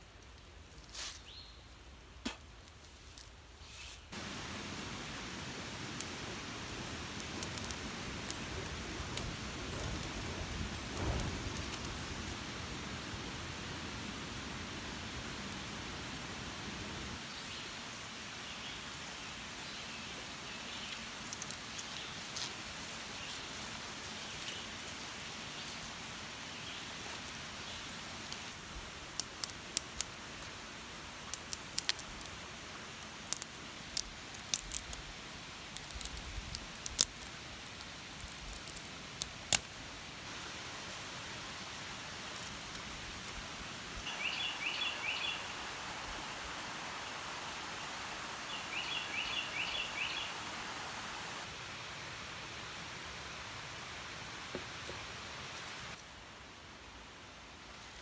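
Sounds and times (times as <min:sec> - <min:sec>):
steady forest hiss: 0:00.0 - 0:58.0
bird chirping call: 0:44.0 - 0:45.6, 0:48.5 - 0:50.4
faint chirps: 0:44.0 - 0:45.8.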